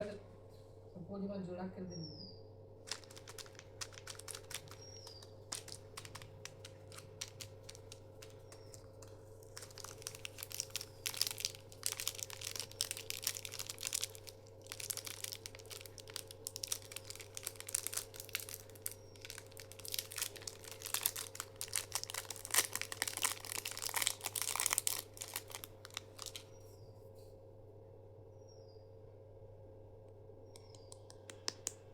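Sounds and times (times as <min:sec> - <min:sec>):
wrappers crinkling and tearing: 0:02.8 - 0:26.6.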